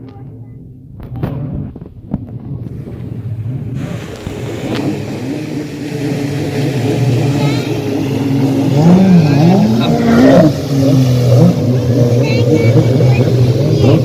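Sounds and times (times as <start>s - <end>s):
motorboat engine: 0.0s - 14.0s.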